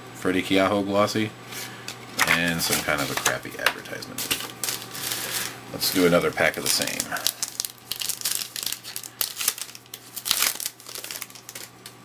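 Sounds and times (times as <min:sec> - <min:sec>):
wrapper crinkling and tearing: 0:02.2 - 0:03.4, 0:04.2 - 0:12.0.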